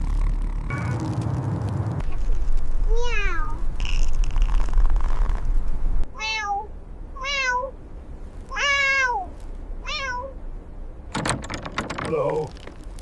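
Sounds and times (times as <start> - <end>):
crackling rustle: 0.0 - 6.1, 8.0 - 9.8, 11.4 - 13.0
kittens mewing: 8.5 - 10.4.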